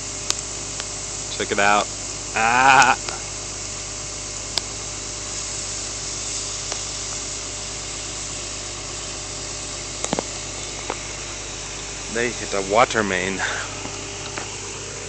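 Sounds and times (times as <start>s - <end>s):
pressurised water jet hissing: 0.0s - 15.0s.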